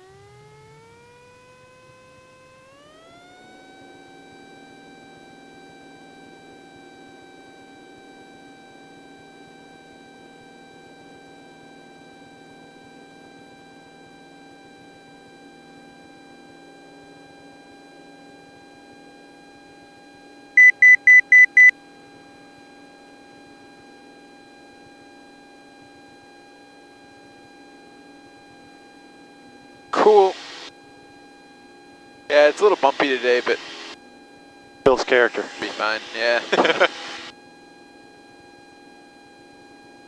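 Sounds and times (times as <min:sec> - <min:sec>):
electronic beeps: 0:20.6 - 0:21.7
aircraft engine drone: 0:30.0 - 0:30.7, 0:32.3 - 0:34.0, 0:34.9 - 0:37.3
high whine: 0:30.0 - 0:30.7, 0:32.3 - 0:34.0, 0:34.9 - 0:37.3.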